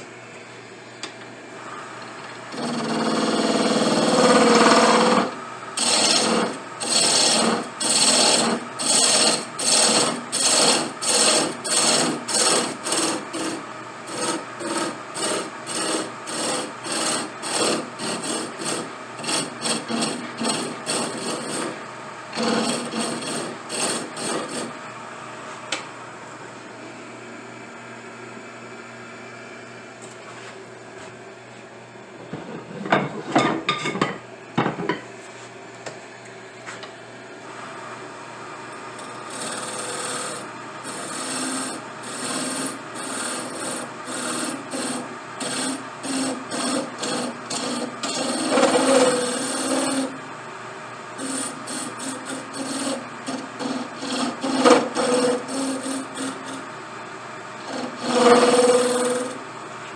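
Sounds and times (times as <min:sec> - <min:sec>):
file rasping on pipe: 0:02.5 - 0:21.8, 0:22.4 - 0:24.7, 0:39.0 - 0:50.2, 0:51.2 - 0:56.6, 0:57.6 - 0:59.4.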